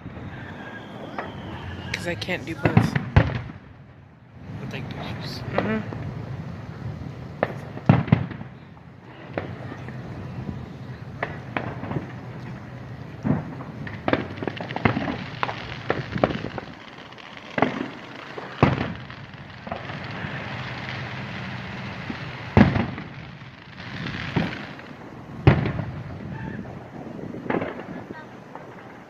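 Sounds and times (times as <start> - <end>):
firework cracks: 0.0 - 29.0
hissing crackle: 0.0 - 29.0
booming firework shell bursts: 1.1 - 3.7, 13.2 - 21.1, 22.0 - 24.8, 25.4 - 26.8.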